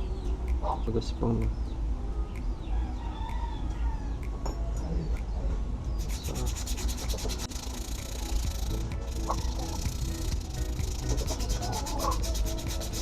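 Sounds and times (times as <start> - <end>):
sandpaper rubbing brake lining: 6.0 - 13.0.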